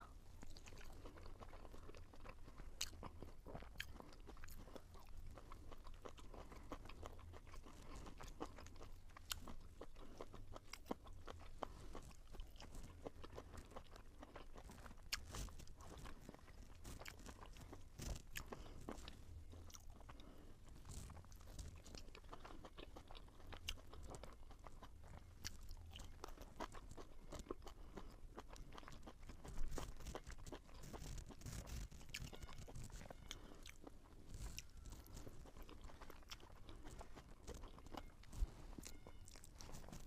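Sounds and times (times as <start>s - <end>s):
chewing crunchy food: 0.0s - 40.0s.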